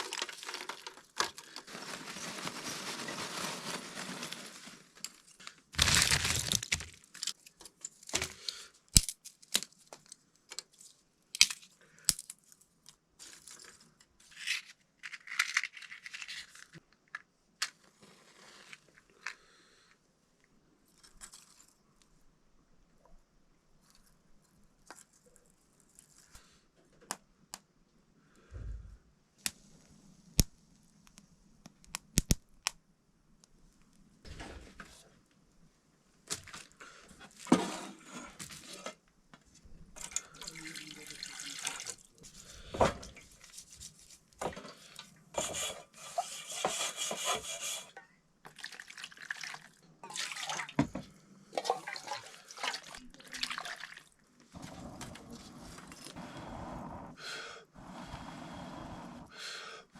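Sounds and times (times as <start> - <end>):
water pouring and splashing: 40.0 - 42.3, 48.5 - 54.2.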